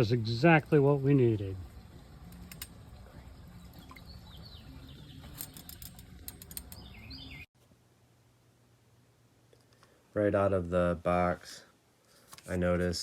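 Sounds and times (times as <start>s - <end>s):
low steady hum: 0.0s - 13.0s
bird chirps: 3.6s - 5.7s, 6.4s - 7.5s.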